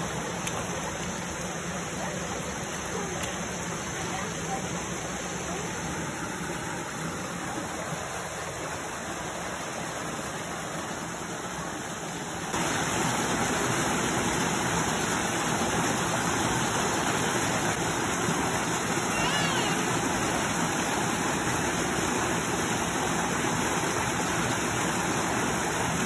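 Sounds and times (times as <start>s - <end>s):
creek water rushing: 0.0s - 26.0s.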